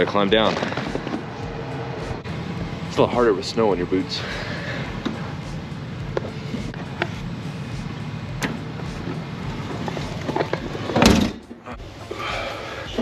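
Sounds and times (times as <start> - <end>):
steady background noise: 0.0 - 13.0
door shutting with a thump: 10.9 - 11.4.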